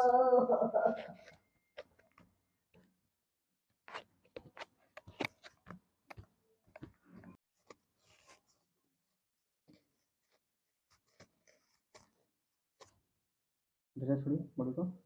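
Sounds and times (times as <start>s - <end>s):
faint clicks and taps: 3.8s - 8.4s.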